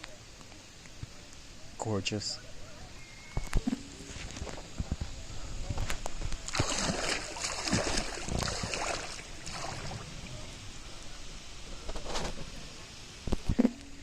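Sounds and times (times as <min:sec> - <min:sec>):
river water splashing: 0:05.9 - 0:13.0.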